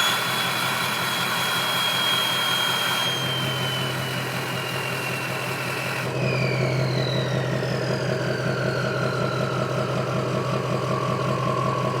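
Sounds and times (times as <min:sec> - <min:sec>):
turbo whistle gliding down: 0:00.0 - 0:12.0
diesel engine idling: 0:07.7 - 0:12.0.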